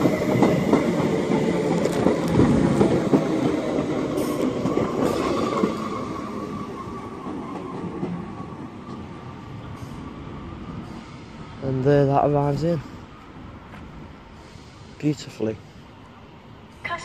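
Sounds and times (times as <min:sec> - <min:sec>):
train wheels clattering over rails: 0:00.0 - 0:09.0.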